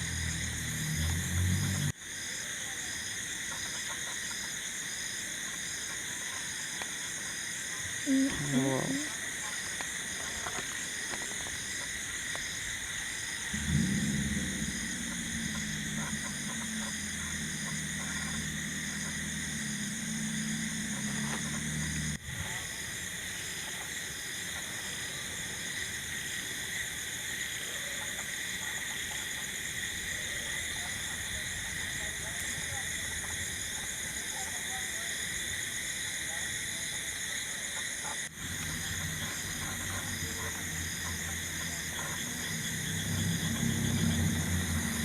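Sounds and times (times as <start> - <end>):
insects trilling: 0.0 - 45.0
low droning hum: 13.5 - 22.2.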